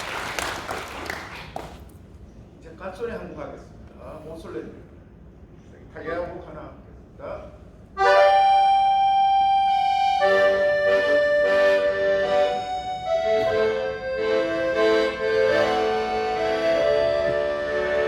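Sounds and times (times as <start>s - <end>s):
accordion playing slow melody: 8.0s - 18.0s.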